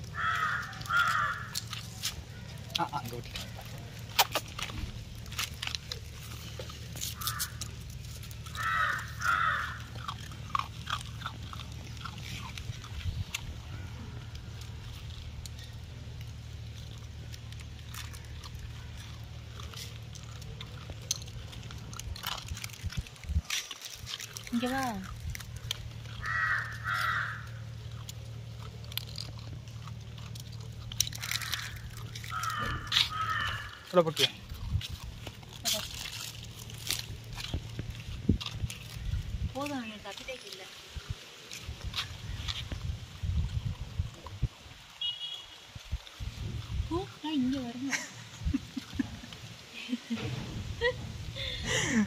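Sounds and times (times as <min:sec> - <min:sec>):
harsh animal calls: 0:00.0 - 0:02.0, 0:07.1 - 0:12.5, 0:25.9 - 0:28.1, 0:31.2 - 0:34.6.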